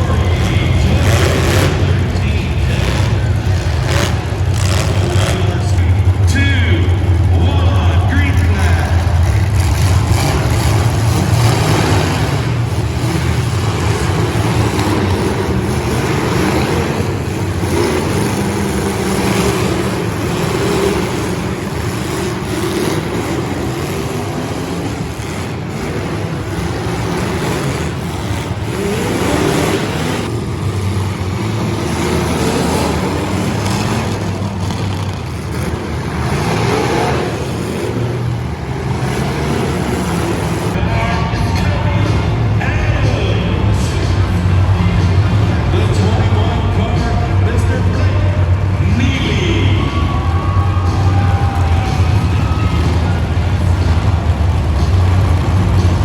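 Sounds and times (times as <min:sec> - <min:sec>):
car engines revving: 0:00.0 - 0:56.0.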